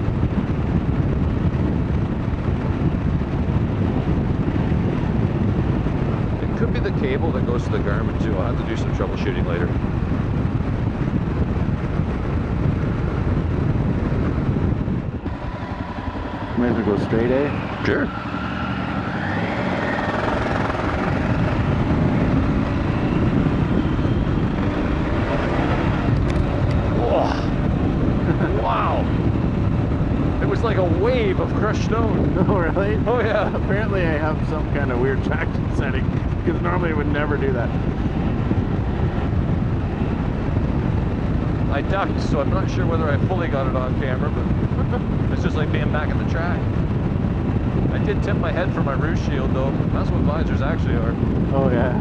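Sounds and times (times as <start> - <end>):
motorcycle engine: 0.0 - 52.0
wind rushing over microphone: 0.0 - 52.0.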